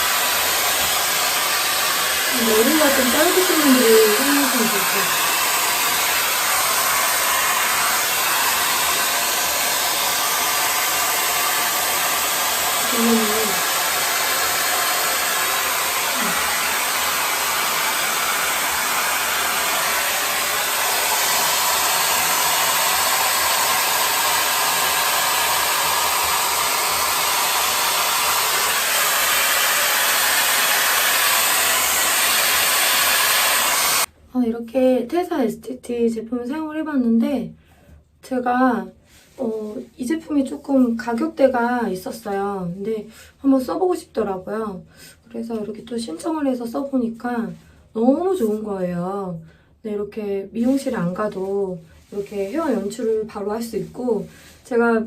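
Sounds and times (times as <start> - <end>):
hot-air styler blowing: 0.0 - 34.1.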